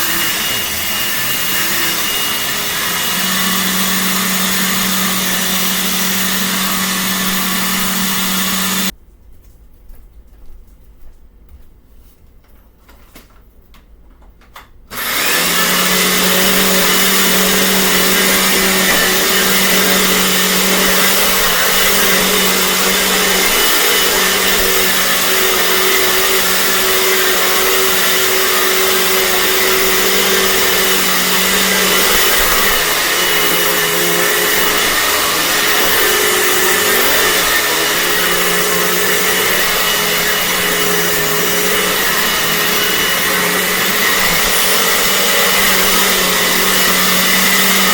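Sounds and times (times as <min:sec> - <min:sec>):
vacuum cleaner running: 0:00.0 - 0:08.9, 0:14.9 - 0:47.9.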